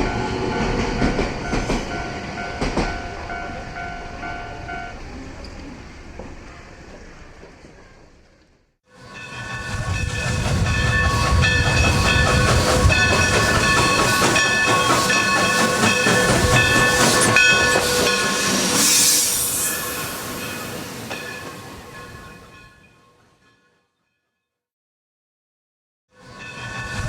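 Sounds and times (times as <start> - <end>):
train rumbling: 0.0 - 22.8, 26.2 - 27.0
burst of hiss: 17.0 - 21.0.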